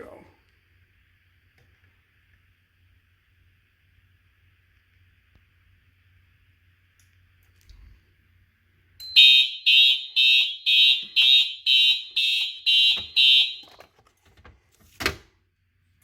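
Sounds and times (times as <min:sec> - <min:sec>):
fire alarm horn pulsing: 0:09.0 - 0:13.8.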